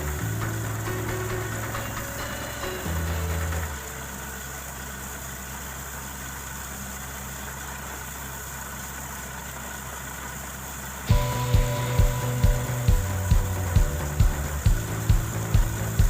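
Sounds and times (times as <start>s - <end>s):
engine idling drone: 0.0s - 16.0s
loud pulsing tones: 11.1s - 16.0s.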